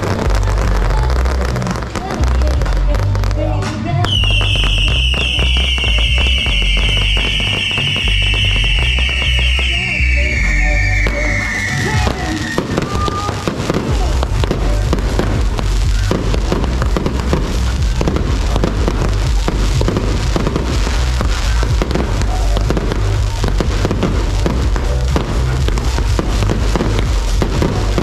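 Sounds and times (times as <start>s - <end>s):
fireworks cracking and banging: 0.0s - 28.0s.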